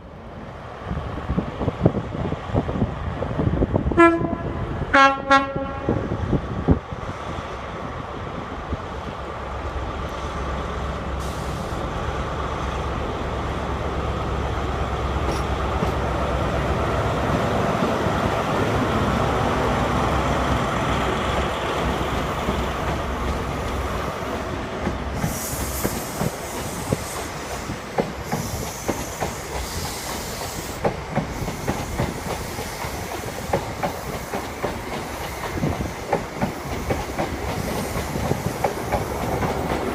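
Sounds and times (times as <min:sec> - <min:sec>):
diesel train engine rumble: 0:00.0 - 0:39.9
train wheels clacking over rail joints: 0:24.8 - 0:39.9.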